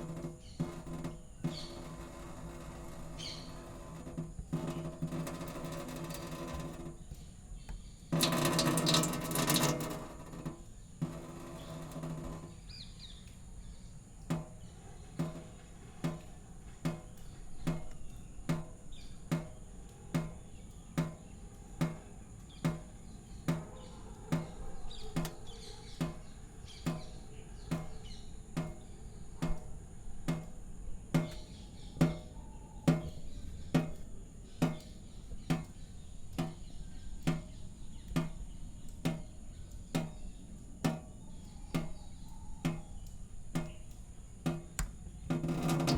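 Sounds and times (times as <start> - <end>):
water dripping: 0.0 - 45.9.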